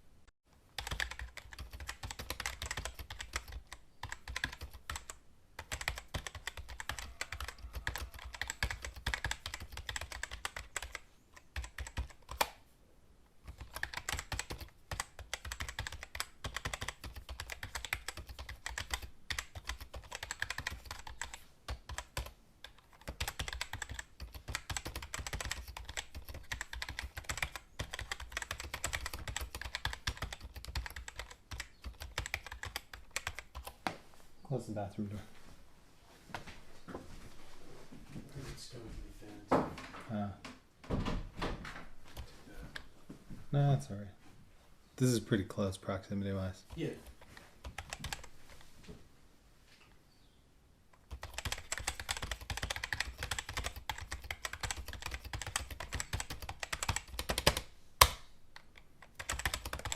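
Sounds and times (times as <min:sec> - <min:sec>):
fast typing on keyboard: 0:00.7 - 0:12.5, 0:13.5 - 0:33.8, 0:46.7 - 0:48.3, 0:51.0 - 0:57.7, 0:58.6 - 0:59.9.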